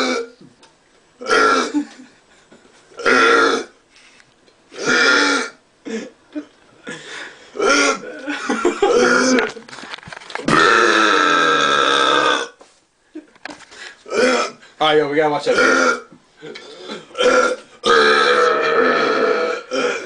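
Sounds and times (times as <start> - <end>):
men belching: 0.0 - 0.4, 1.2 - 2.0, 3.0 - 3.8, 4.8 - 6.5, 7.6 - 9.6, 10.4 - 12.6, 14.1 - 14.6, 15.5 - 20.0.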